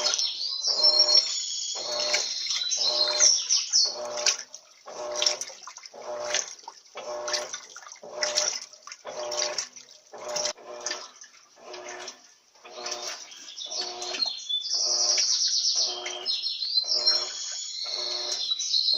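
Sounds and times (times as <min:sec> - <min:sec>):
birds chirping: 0:00.0 - 0:05.4, 0:12.6 - 0:18.9
washing machine agitating water: 0:00.0 - 0:18.9.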